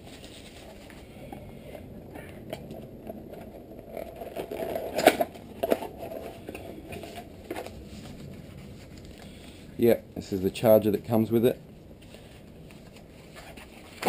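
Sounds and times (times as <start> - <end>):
box packaging handled and opened: 0.0 - 1.4, 2.2 - 9.3, 12.3 - 14.0.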